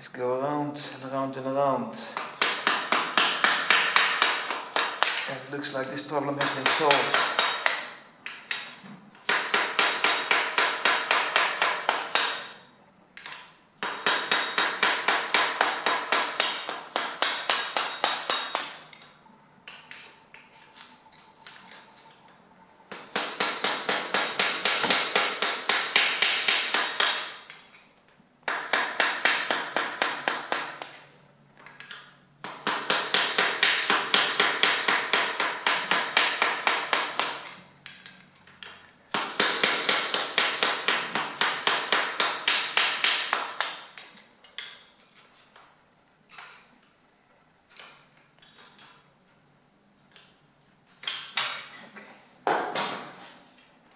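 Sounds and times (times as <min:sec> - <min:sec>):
hammer striking screwdriver: 0:06.4 - 0:07.9.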